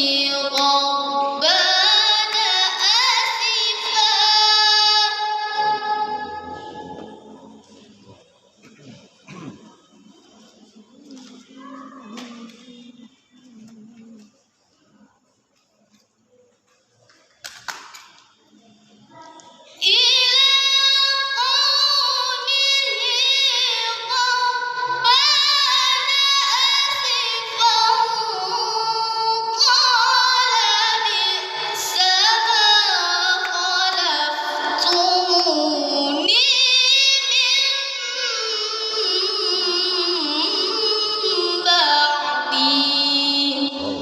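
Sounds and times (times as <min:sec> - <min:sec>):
high voice chanting recitation: 0:00.0 - 0:15.2, 0:18.5 - 0:44.0.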